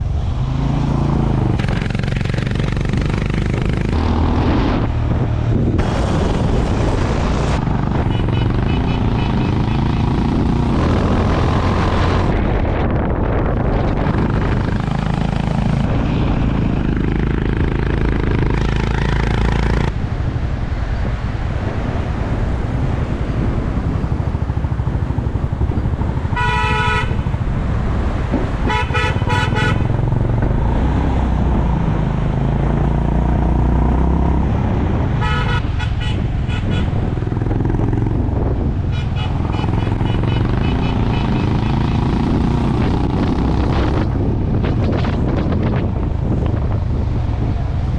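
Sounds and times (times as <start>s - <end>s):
wind noise: 0.0s - 47.9s
motorcycle engine running: 1.0s - 4.6s, 7.6s - 19.9s, 22.8s - 30.6s, 34.9s - 47.9s
horn beeping: 8.0s - 9.9s, 38.9s - 41.8s.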